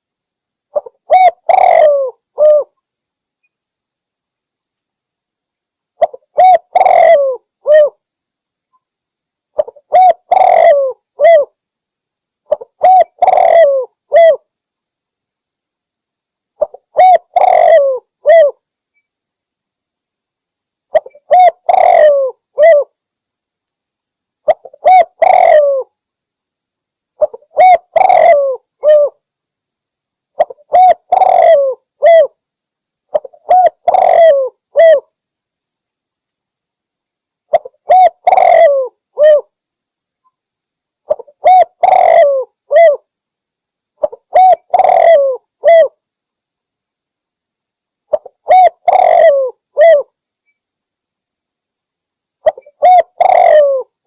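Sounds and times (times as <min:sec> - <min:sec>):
dove cooing: 0:00.7 - 0:02.7, 0:06.0 - 0:08.0, 0:09.6 - 0:11.5, 0:12.5 - 0:14.4, 0:16.6 - 0:18.6, 0:20.9 - 0:22.9, 0:24.5 - 0:25.9, 0:27.2 - 0:29.2, 0:30.4 - 0:32.4, 0:33.1 - 0:35.1, 0:37.5 - 0:39.5, 0:41.1 - 0:43.0, 0:44.0 - 0:46.0, 0:48.1 - 0:50.1, 0:52.4 - 0:54.0.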